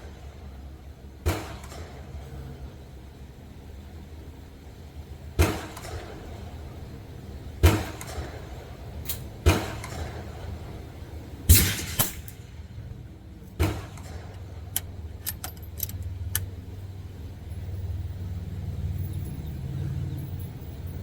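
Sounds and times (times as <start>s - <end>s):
low steady rumble: 0.0s - 21.0s
rifle shots: 11.5s - 12.6s, 13.6s - 15.9s
light metallic clicks: 13.4s - 16.6s.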